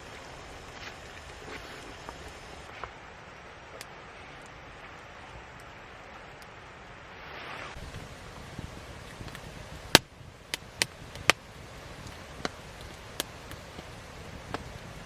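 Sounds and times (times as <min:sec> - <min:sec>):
wood fire crackling: 0:00.0 - 0:15.0
sharp pops from fire: 0:07.6 - 0:15.0.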